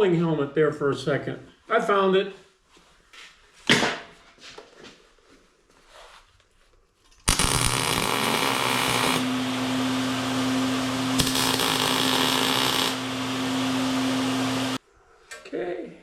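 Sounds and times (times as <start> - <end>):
arc welder hissing: 7.3 - 14.8.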